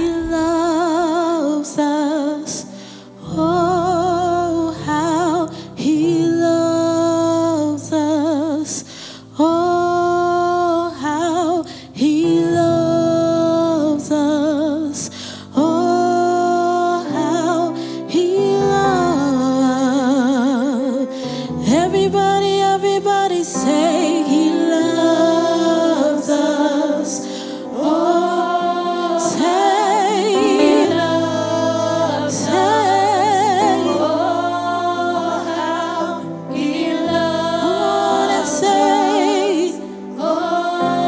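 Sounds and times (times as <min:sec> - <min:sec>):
instrumental accompaniment: 0:27.7 - 0:41.0
woman singing with vibrato: 0:29.3 - 0:35.8.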